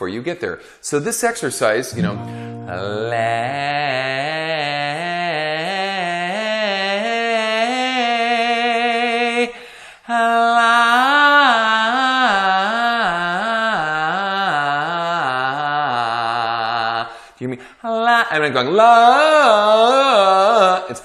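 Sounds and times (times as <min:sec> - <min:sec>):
man breathing in: 0:00.6 - 0:00.8, 0:02.2 - 0:02.7, 0:09.5 - 0:10.1, 0:17.1 - 0:17.8
man singing vocal scale: 0:01.9 - 0:21.0.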